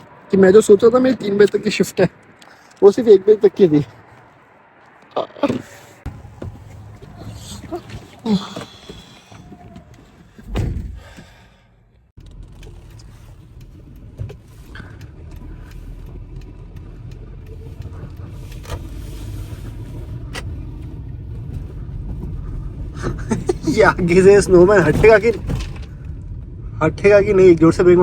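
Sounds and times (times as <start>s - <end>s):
car engine and tyres rumbling: 0.0s - 28.0s
heavy thump: 10.4s - 11.4s.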